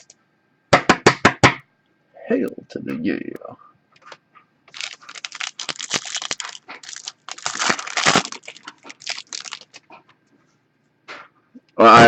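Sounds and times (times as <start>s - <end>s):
wrapper being torn and crinkled: 4.7s - 9.9s.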